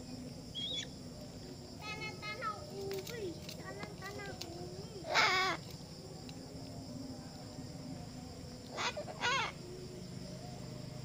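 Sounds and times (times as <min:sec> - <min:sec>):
parrot calling: 0:05.0 - 0:05.6, 0:08.7 - 0:09.6.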